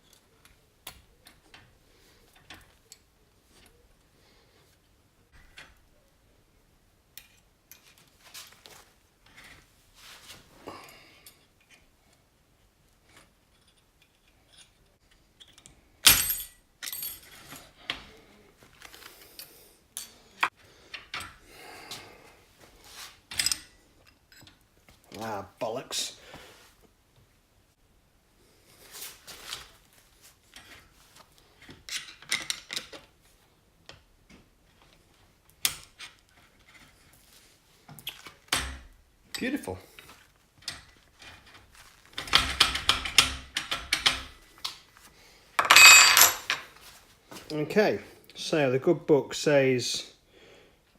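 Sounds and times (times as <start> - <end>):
metal tools clicking and scraping: 13.1 - 18.0.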